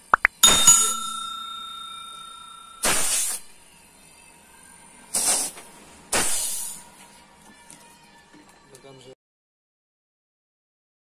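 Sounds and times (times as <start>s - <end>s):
pressurised gas hissing blasts: 2.8s - 3.4s, 5.1s - 6.8s.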